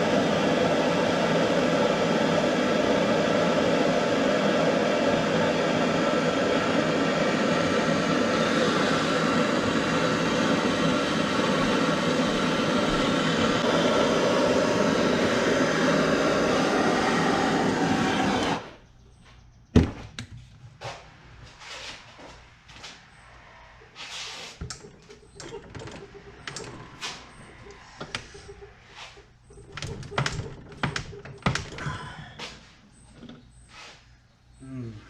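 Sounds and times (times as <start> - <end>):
loud rushing roar: 0.0 - 18.8, 25.4 - 28.8.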